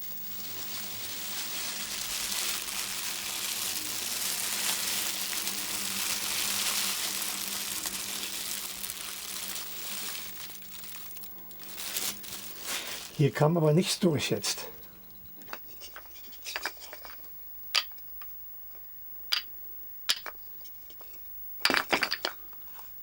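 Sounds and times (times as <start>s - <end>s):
crackling rushing hiss: 0.0s - 14.6s.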